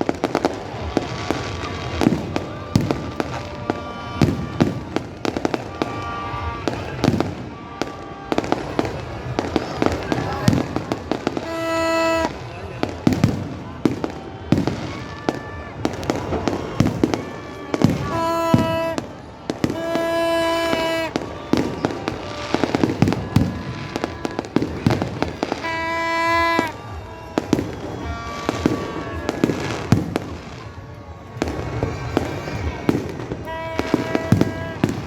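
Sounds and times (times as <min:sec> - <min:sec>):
fireworks bangs and crackles: 0:00.0 - 0:35.0
music playing: 0:18.0 - 0:21.2.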